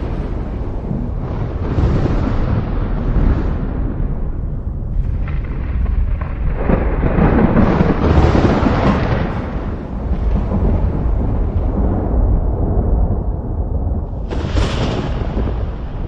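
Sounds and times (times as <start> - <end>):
thunder rumbling: 0.0 - 16.0.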